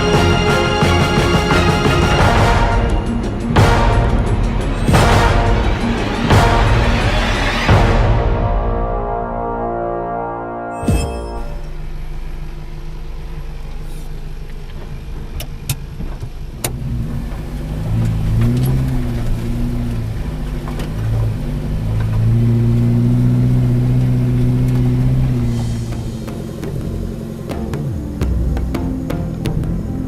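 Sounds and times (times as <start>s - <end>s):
small petrol engine revving: 16.5s - 27.8s.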